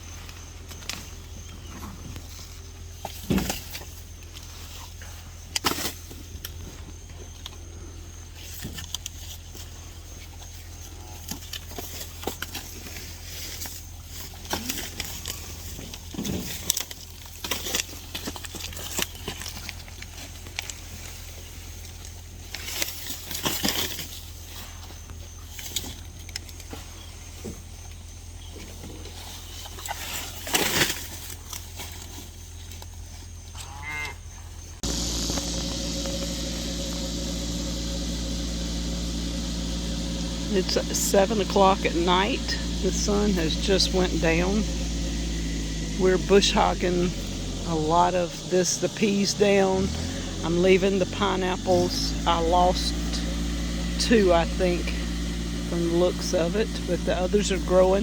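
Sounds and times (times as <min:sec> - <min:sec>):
steady low hum: 0:34.7 - 0:58.0.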